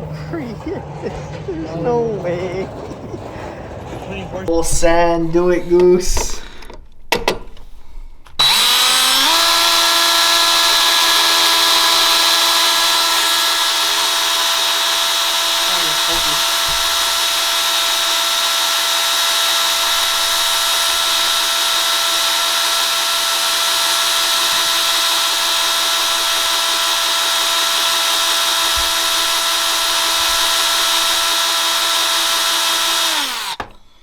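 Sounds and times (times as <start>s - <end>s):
power drill whining: 8.2s - 34.0s.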